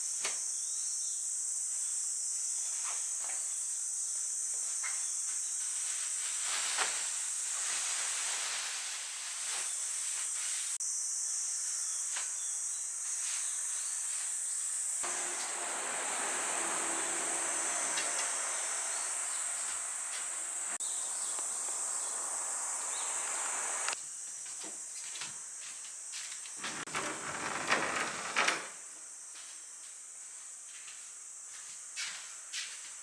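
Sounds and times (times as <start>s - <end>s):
insects shrilling: 15.2s - 24.0s.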